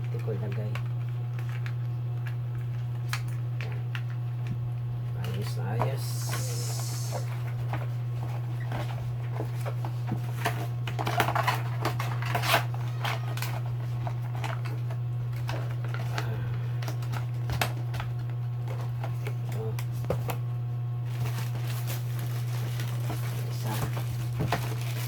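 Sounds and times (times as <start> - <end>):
low hum: 0.0 - 25.0
plastic wrapping crinkling: 21.0 - 25.0.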